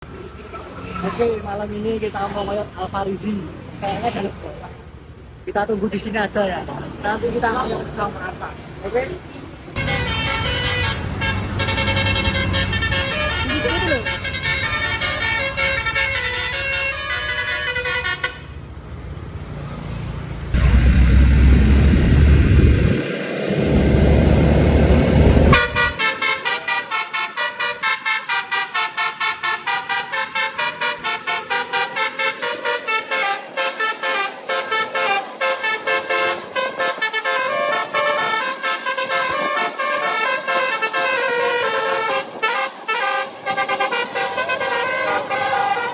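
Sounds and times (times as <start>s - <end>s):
bus engine rumble: 0.0s - 45.9s
bus multi-tone horn melody: 9.8s - 18.6s, 25.2s - 45.9s.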